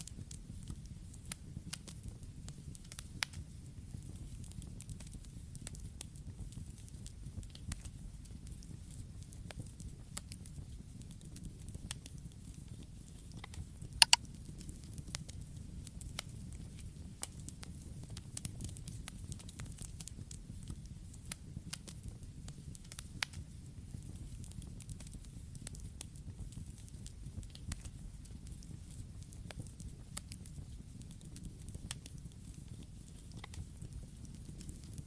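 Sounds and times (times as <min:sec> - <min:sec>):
campfire flames rumbling: 0:00.0 - 0:35.0
fire crackling: 0:00.0 - 0:35.0.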